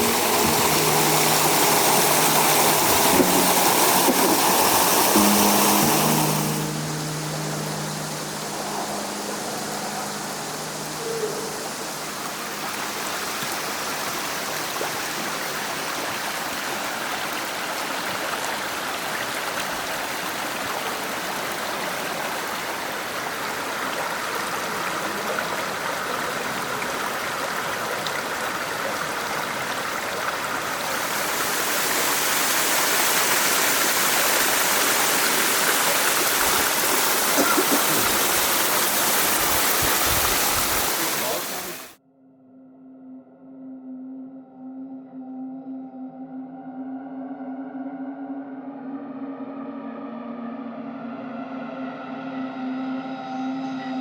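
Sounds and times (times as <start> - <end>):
creek water rushing: 0.0 - 42.0.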